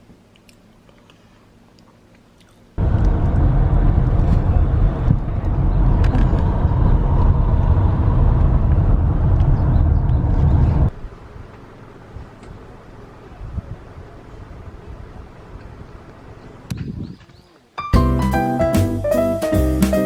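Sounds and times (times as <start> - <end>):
vehicle rumble: 2.8 - 16.7.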